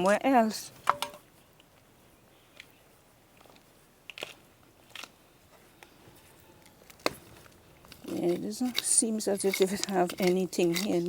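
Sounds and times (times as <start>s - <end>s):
dry plant matter crunching: 3.3s - 6.0s, 6.6s - 11.0s.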